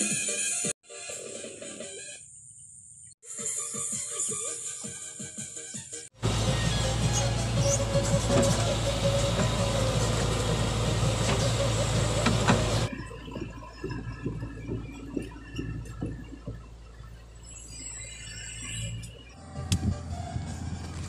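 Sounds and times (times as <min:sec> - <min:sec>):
diesel engine running: 0:06.2 - 0:12.9, 0:19.3 - 0:21.0.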